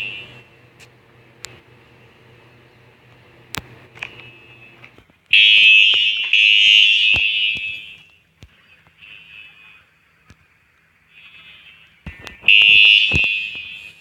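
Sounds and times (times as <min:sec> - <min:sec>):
fire alarm high-pitched tone: 0:00.0 - 0:00.5, 0:04.2 - 0:08.2, 0:12.4 - 0:14.0.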